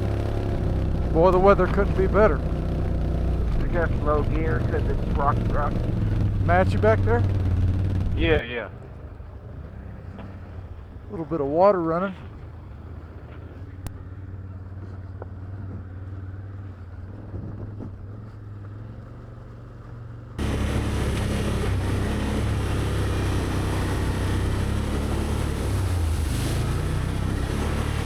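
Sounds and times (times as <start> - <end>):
dense rushing noise: 0.0 - 8.7
atv engine at low speed: 0.0 - 28.0.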